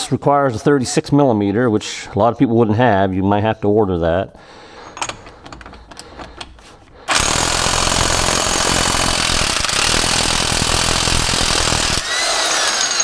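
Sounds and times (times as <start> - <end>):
impact wrench hammering: 7.1 - 13.0
impact wrench whine winding down: 7.1 - 13.0.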